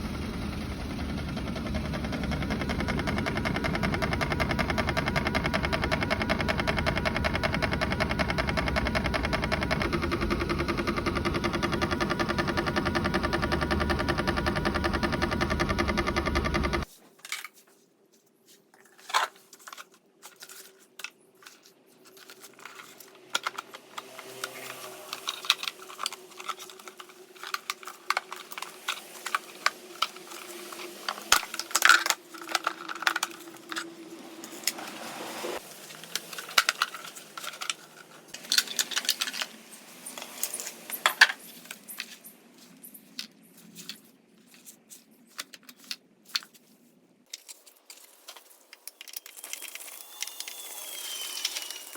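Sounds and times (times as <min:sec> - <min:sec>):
steady motor hum: 0:00.0 - 0:16.9
mirror motor clicking and grinding: 0:00.2 - 0:16.9.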